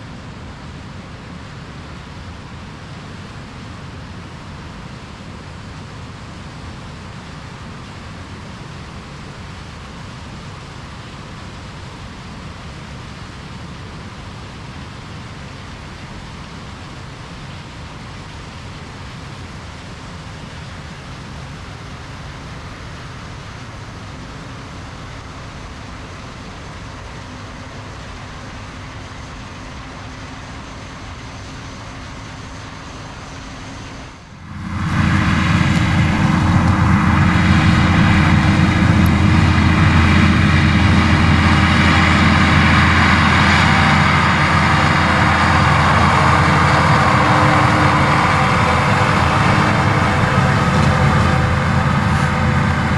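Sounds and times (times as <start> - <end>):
combine harvester droning: 34.4 - 52.9.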